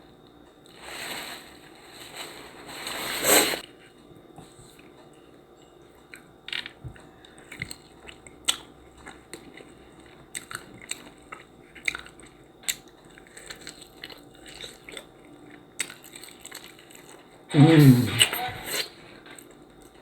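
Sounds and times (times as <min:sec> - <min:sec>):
person chewing crunchy food: 0:06.0 - 0:17.3.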